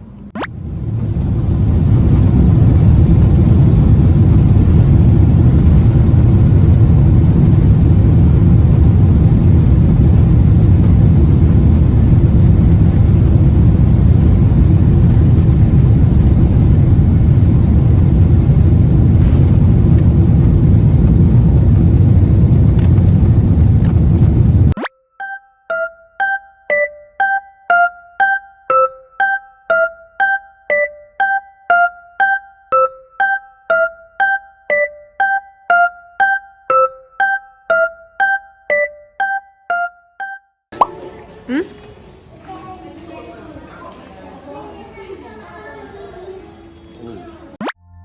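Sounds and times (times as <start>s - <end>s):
vehicle rumbling: 0.0s - 24.8s.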